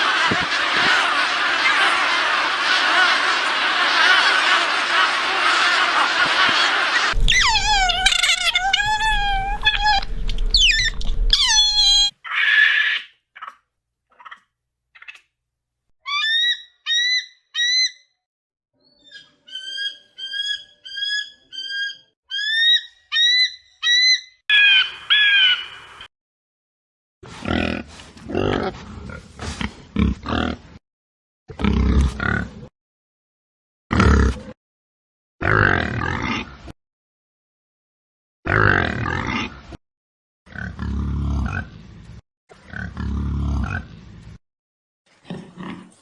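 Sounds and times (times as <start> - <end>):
long gliding animal calls: 0.0 - 12.7
short rising chirp-like calls: 7.1 - 12.6.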